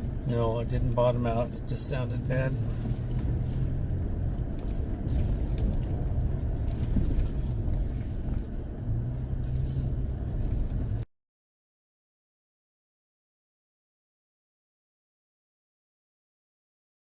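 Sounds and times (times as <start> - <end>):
truck engine and tyres rumbling: 0.0 - 11.1.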